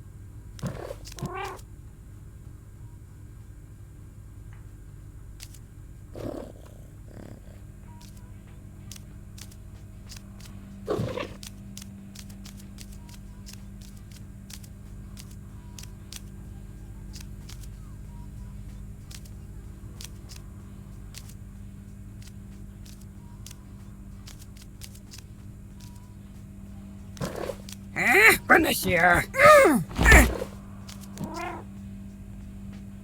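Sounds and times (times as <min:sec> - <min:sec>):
cat purring: 0:06.2 - 0:08.0, 0:10.9 - 0:11.4.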